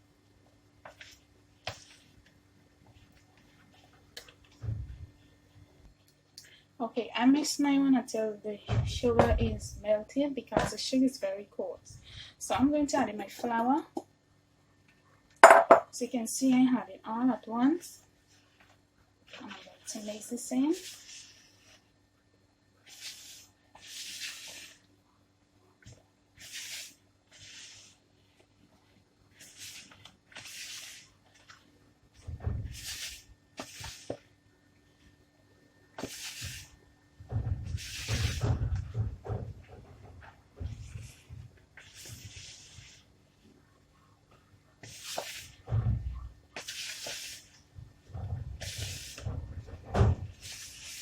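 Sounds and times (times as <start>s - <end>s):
spoon knocking bowl: 15.4s - 15.8s
spoon scraping dough in bowl: 18.3s - 21.9s, 22.9s - 24.8s, 25.9s - 28.5s, 32.7s - 34.3s, 40.2s - 43.1s, 44.8s - 45.7s, 46.5s - 49.7s, 50.3s - 51.0s.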